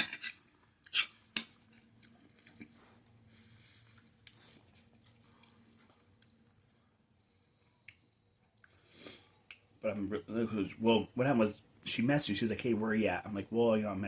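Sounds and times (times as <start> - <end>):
soft chewing: 0.3 - 10.2.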